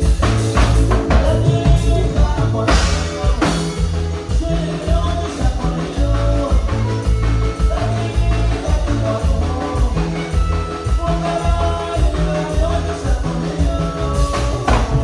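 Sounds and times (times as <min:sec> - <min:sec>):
latin band music: 0:00.0 - 0:15.0.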